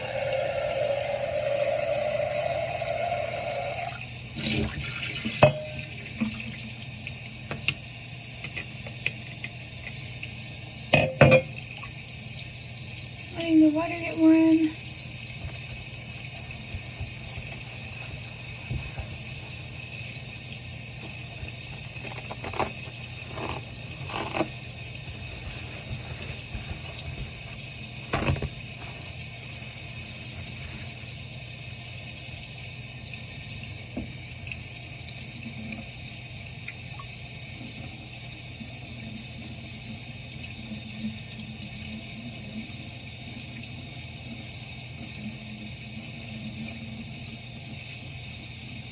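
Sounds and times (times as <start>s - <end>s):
sink faucet running: 0.0s - 48.9s.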